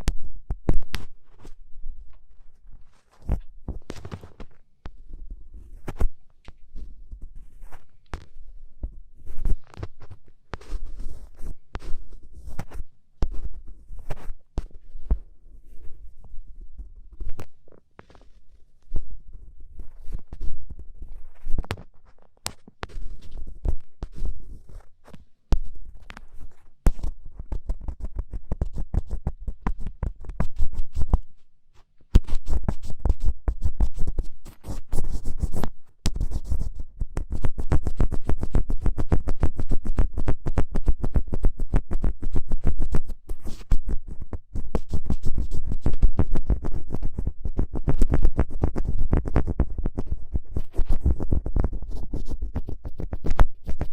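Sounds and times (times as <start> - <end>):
ear pick scratching: 32.1 - 53.9.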